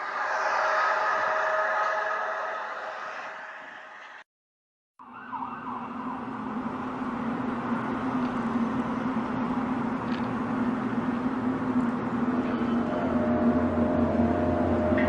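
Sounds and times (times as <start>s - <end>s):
rushing noise: 0.0s - 4.2s, 6.3s - 15.0s
siren-like drone: 0.0s - 4.2s, 5.0s - 7.5s, 12.3s - 15.0s.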